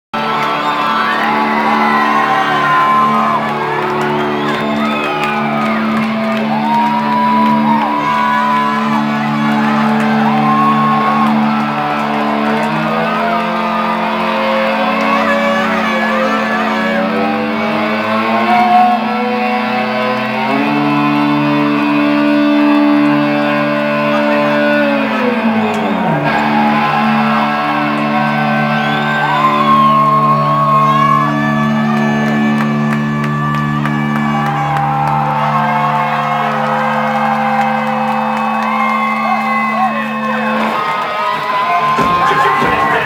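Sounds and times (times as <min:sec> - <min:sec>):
audience cheering and whooping: 0:00.2 - 0:43.0
electric guitar chords: 0:00.2 - 0:43.0.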